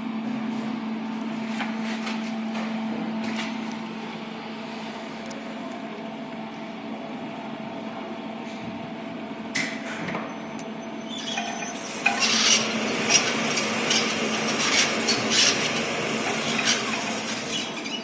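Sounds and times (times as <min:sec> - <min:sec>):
elevator drive humming: 0:10.2 - 0:18.0.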